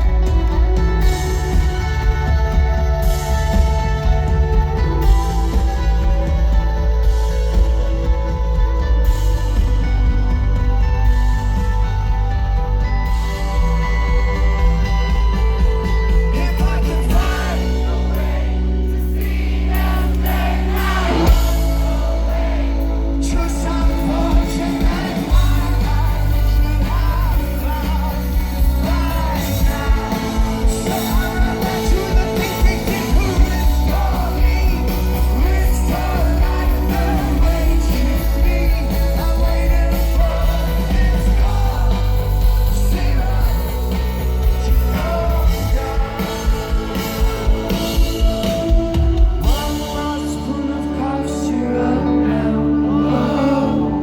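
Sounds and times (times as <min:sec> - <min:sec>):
steady drum beat: 0:00.0 - 0:50.1
bass and keyboard chords: 0:00.0 - 0:54.0
lead singer singing: 0:00.0 - 0:54.0.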